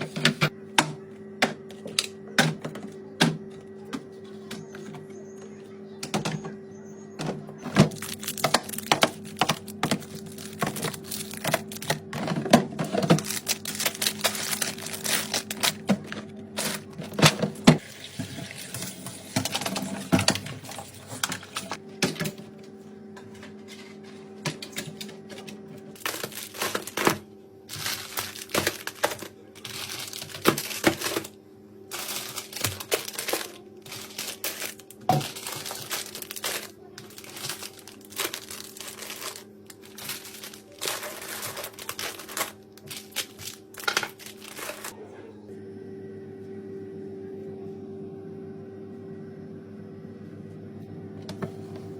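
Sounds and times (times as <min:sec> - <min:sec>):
steady low hum: 0:00.0 - 0:51.9
plastic containers clacking: 0:07.2 - 0:17.8, 0:24.5 - 0:31.3, 0:31.9 - 0:45.0
plastic packaging crinkling: 0:07.7 - 0:17.2, 0:25.2 - 0:45.0.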